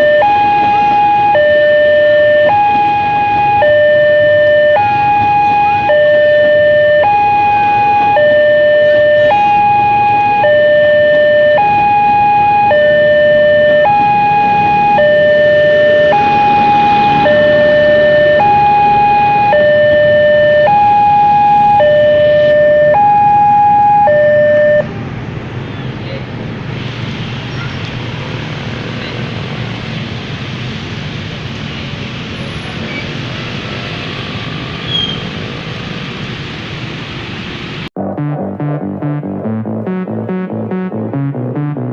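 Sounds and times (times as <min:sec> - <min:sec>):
two-tone warning siren: 0:00.0 - 0:25.0
traffic noise: 0:00.0 - 0:38.0
brief high squeak: 0:34.8 - 0:35.3.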